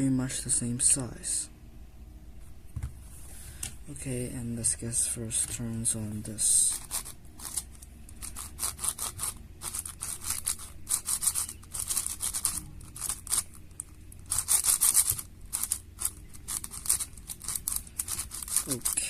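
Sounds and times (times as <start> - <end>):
puzzle cube clicking and scraping: 6.6 - 19.0.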